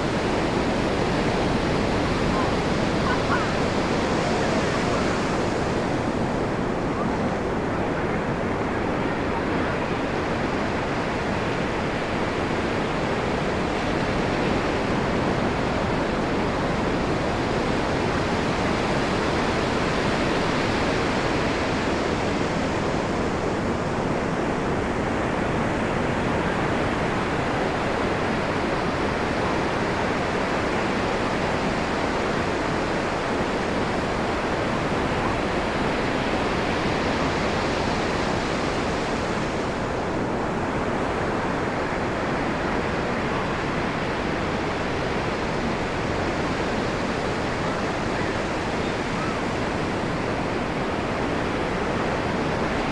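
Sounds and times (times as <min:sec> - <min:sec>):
ocean waves breaking: 0:00.0 - 0:09.6.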